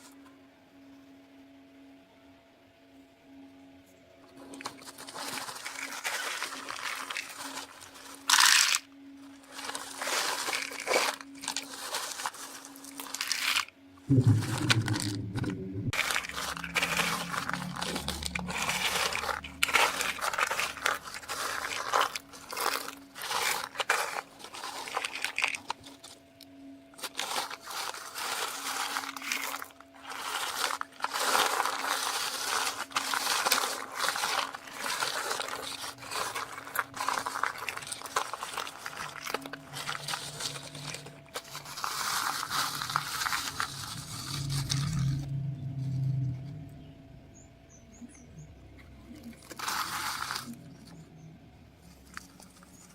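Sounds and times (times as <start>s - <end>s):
faint steady hum: 0.0s - 52.9s
corn kernels rustling and crunching: 4.3s - 46.6s, 48.1s - 52.9s.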